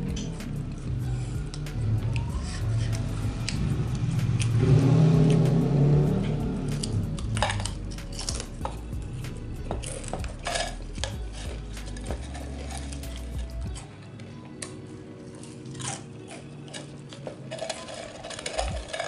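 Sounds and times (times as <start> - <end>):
low hum: 0.0 - 14.5
crunching noodles and chips: 0.0 - 19.0.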